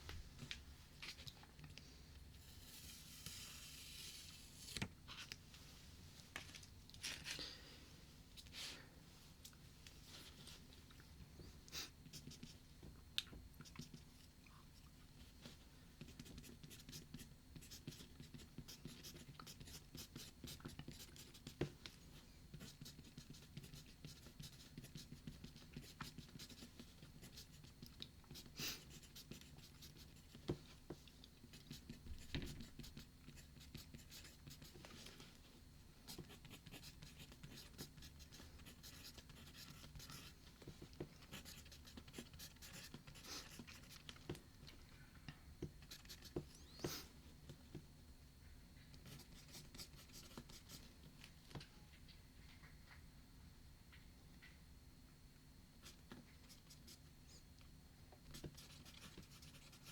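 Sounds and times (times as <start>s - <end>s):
pencil writing on paper: 16.0s - 21.6s, 22.6s - 27.7s.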